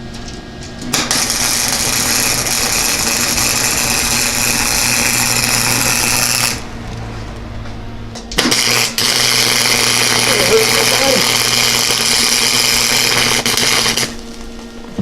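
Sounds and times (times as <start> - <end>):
welder frying hiss: 0.9 - 6.7, 8.4 - 14.8.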